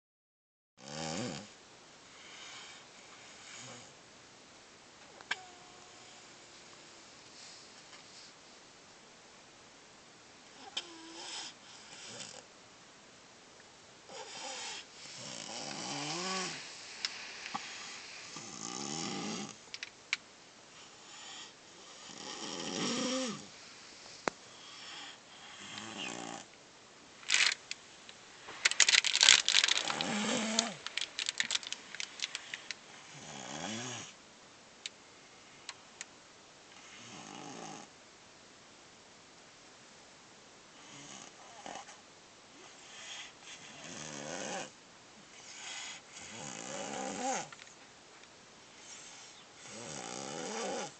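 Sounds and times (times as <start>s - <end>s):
person snoring: 0.8s - 1.5s, 14.1s - 19.6s, 20.9s - 23.6s, 24.6s - 26.5s, 28.7s - 34.2s, 42.9s - 44.7s, 45.6s - 47.5s, 48.9s - 50.9s.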